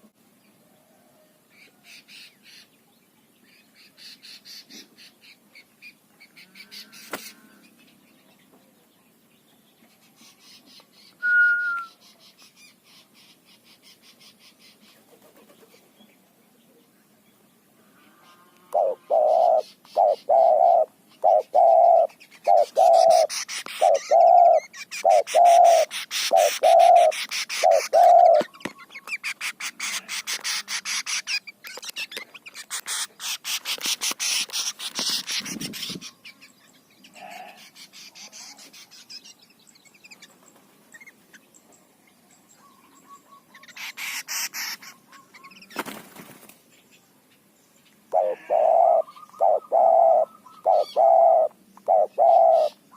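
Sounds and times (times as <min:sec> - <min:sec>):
faint bird calls: 0:17.7 - 0:46.6, 0:47.8 - 0:52.9
dove cooing: 0:18.2 - 0:28.5, 0:48.1 - 0:52.8
bird harsh chattering rattle: 0:18.8 - 0:36.1, 0:43.6 - 0:46.3.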